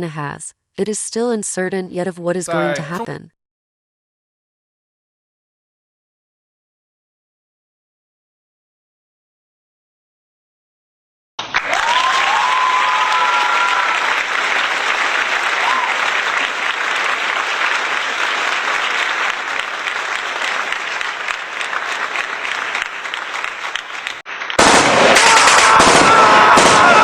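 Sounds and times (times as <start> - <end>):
large crowd applauding: 2.5 - 3.0, 11.4 - 27.0
crowd cheering: 2.5 - 3.1, 11.4 - 27.0.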